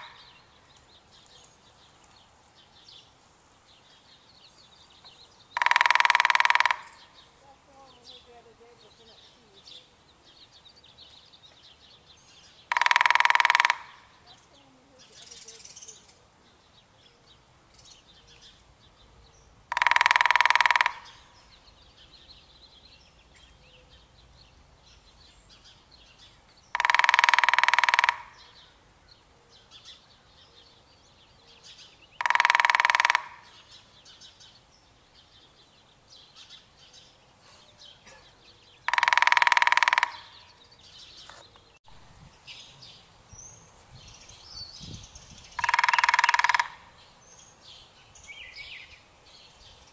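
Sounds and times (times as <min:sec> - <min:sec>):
woodpecker drumming: 0:00.0 - 0:02.2, 0:05.0 - 0:09.2, 0:11.0 - 0:14.6, 0:19.6 - 0:24.2, 0:24.9 - 0:28.8, 0:32.0 - 0:34.4, 0:38.0 - 0:41.9, 0:44.8 - 0:49.0
bird chirps: 0:03.7 - 0:49.9.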